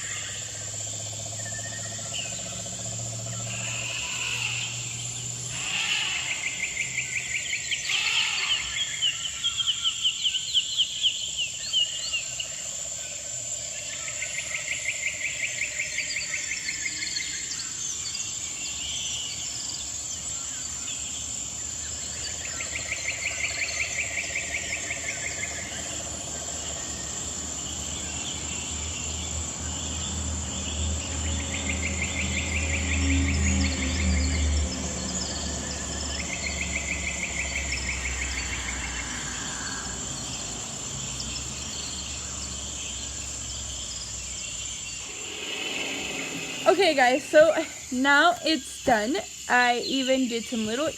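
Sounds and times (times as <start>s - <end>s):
insects chirping in trills: 0.0s - 50.9s
steady background hiss: 36.1s - 50.9s.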